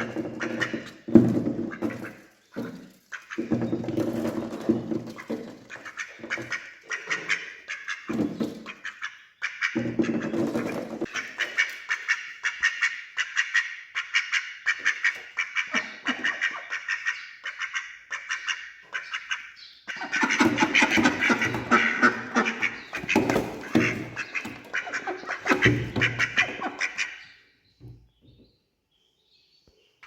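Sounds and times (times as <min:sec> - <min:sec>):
ducks dabbling clicks: 0:00.0 - 0:27.3
ducks quacking: 0:00.0 - 0:27.4.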